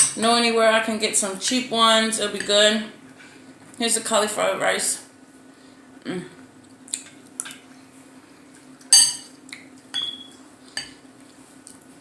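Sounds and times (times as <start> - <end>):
spoon clinking against dishes: 8.9 - 9.3, 9.9 - 11.0.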